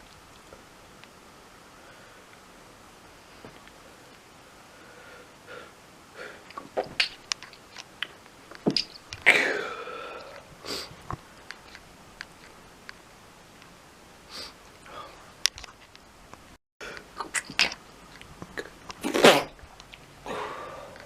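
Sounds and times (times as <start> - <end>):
man sneezing: 9.3 - 10.0.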